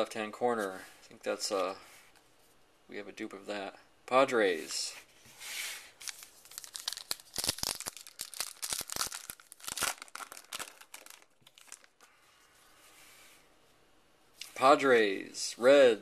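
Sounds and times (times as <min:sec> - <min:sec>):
wrapper being torn and crinkled: 0:06.0 - 0:12.0.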